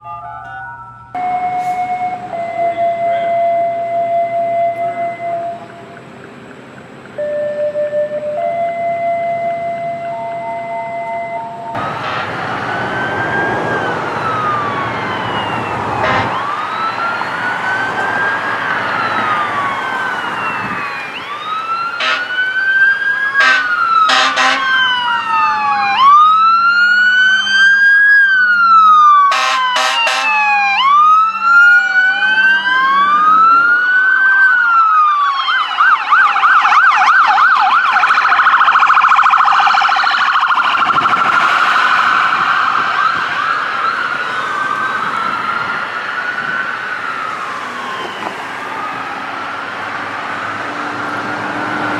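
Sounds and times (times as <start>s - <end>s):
siren yelp: 0.0s - 6.0s, 7.2s - 51.9s
siren wailing: 0.0s - 6.1s, 7.1s - 51.9s
short horn blasts: 16.0s - 16.4s, 22.0s - 22.3s, 23.4s - 24.7s, 29.3s - 30.4s.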